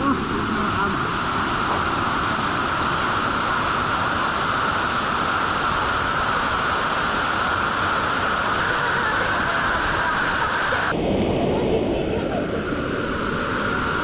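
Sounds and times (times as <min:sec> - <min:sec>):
waterfall rushing: 0:00.0 - 0:10.9, 0:12.0 - 0:14.0.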